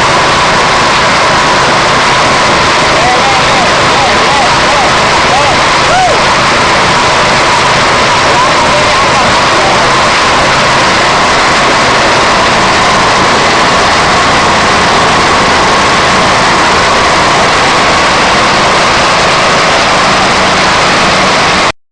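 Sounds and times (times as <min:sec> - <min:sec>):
crusher machine running: 0:00.0 - 0:21.8.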